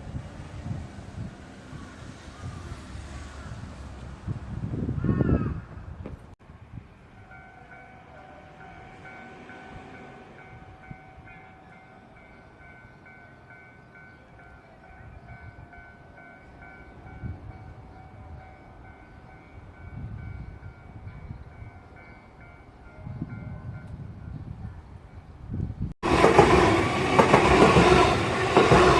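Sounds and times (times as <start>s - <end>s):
train rumbling: 0.0s - 28.9s
level crossing warning bell: 7.2s - 23.9s.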